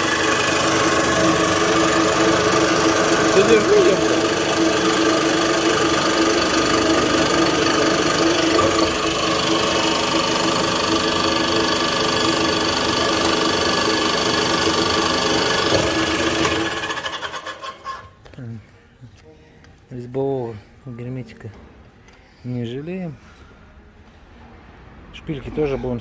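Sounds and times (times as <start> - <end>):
machine motor humming and winding down: 0.0 - 17.6.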